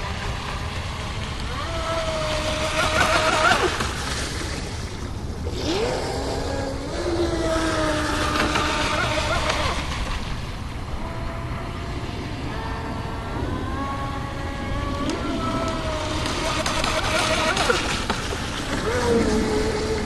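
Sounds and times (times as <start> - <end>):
rc boat electric motor whining: 0.0 - 4.2, 5.4 - 10.3, 10.9 - 20.0.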